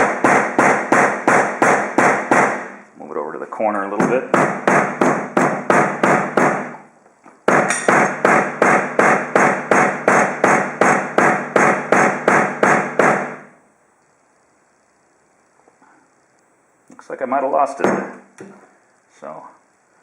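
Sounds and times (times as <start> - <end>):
hammer striking cable: 0.0 - 2.8, 7.5 - 13.4.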